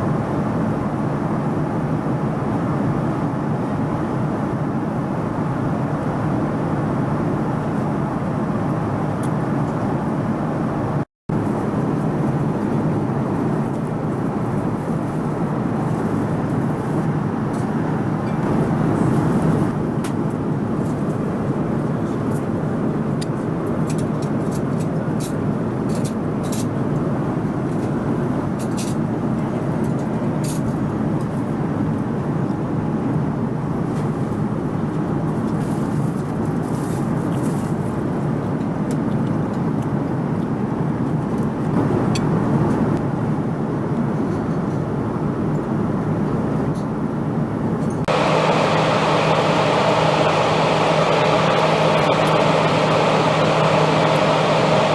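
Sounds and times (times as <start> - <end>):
airliner cabin engine roar: 0.0 - 28.0, 47.8 - 54.9.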